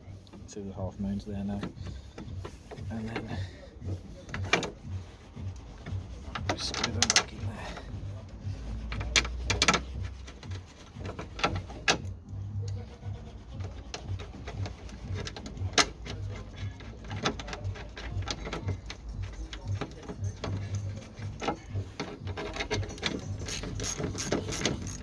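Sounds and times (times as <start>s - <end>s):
metallic clicks of hand tool: 22.6s - 25.0s.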